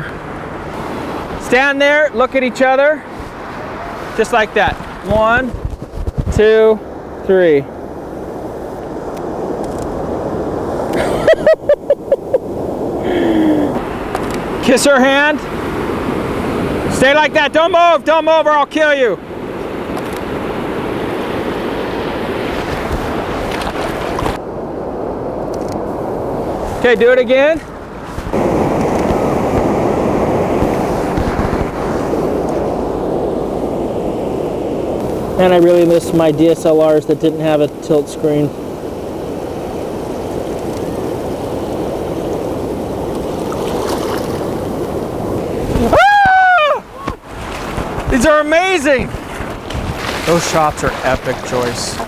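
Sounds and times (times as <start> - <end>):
wind on microphone: 0.0 - 17.5, 19.2 - 52.0
ocean surf: 0.0 - 52.0
person laughing: 10.9 - 13.8.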